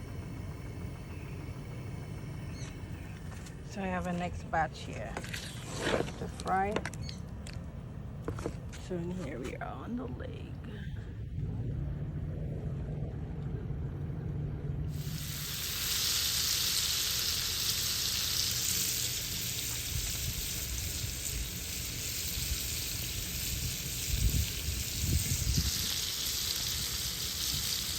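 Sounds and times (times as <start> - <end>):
fish sizzling in hot oil: 14.9 - 27.9.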